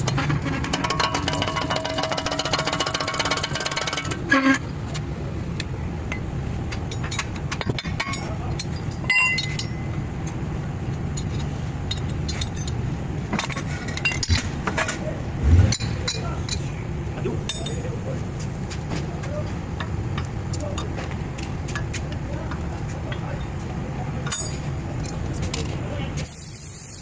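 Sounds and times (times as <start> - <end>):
car engine rumbling: 0.0 - 26.4
sharp clicks and clinks: 5.6 - 16.7, 17.4 - 18.0, 24.2 - 25.8.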